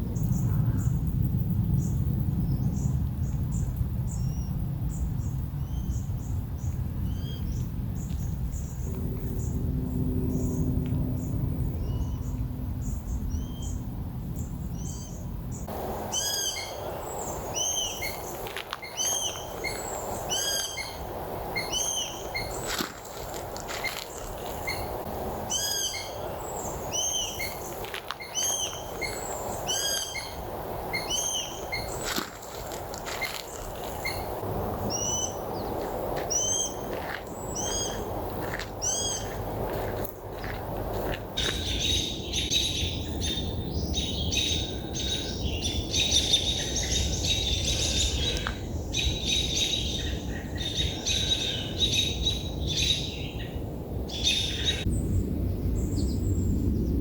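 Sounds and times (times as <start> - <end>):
birds chirping: 1.8 - 57.0
low rushing background: 6.9 - 45.9.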